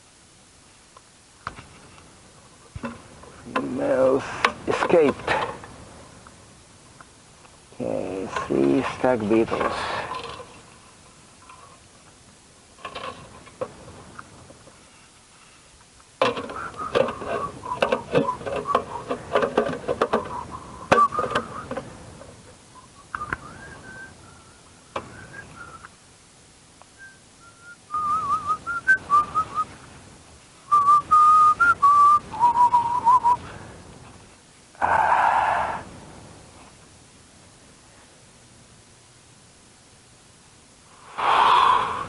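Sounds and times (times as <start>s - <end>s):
handling clicks and rustling: 8.3s - 10.8s, 15.8s - 22.4s
person whistling: 16.5s - 19.0s, 20.2s - 21.7s, 22.8s - 25.9s, 27.0s - 29.7s, 30.7s - 33.4s.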